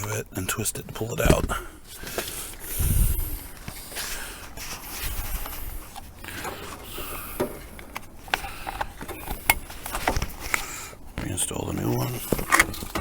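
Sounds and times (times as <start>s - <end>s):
screwdriver scraping plastic: 5.0s - 13.0s
plastic clicks: 5.9s - 13.0s.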